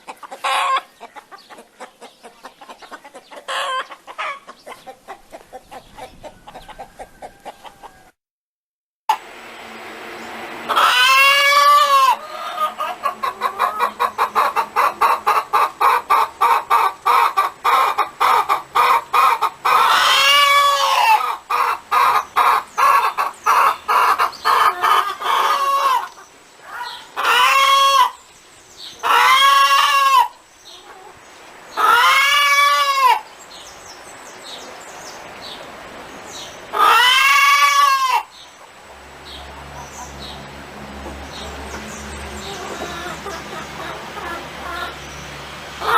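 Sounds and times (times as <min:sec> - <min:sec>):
hen clucking: 0:00.0 - 0:08.1, 0:10.7 - 0:28.2, 0:28.9 - 0:33.3, 0:36.4 - 0:45.1
hen squawking: 0:10.7 - 0:28.2, 0:36.7 - 0:38.3.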